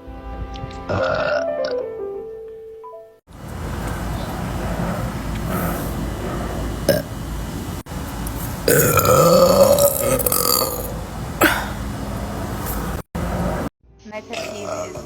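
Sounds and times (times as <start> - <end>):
woman burping: 0.9 - 1.7, 8.7 - 11.8.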